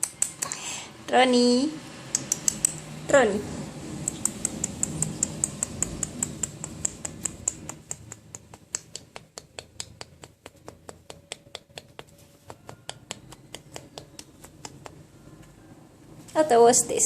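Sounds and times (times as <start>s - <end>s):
small sharp clicks: 2.1s - 2.8s, 4.0s - 15.0s.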